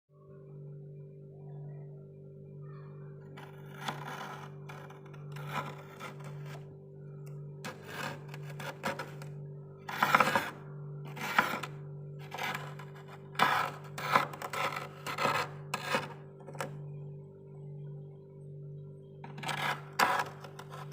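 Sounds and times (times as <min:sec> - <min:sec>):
steady low hum: 0:00.2 - 0:20.9
spoon scraping frost: 0:03.4 - 0:06.6, 0:07.7 - 0:09.3, 0:09.9 - 0:16.7, 0:19.3 - 0:20.9.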